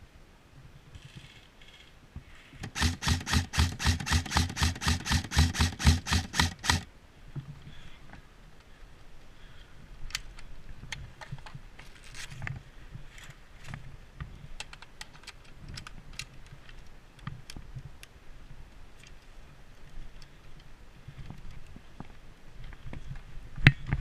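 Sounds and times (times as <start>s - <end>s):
sharp clicks and ticks: 2.6s - 6.9s.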